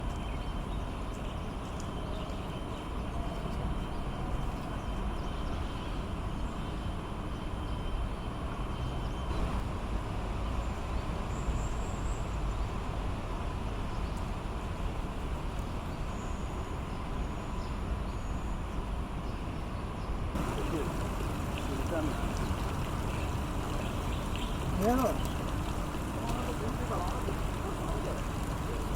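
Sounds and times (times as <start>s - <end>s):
distant road traffic rumble: 20.4s - 28.9s.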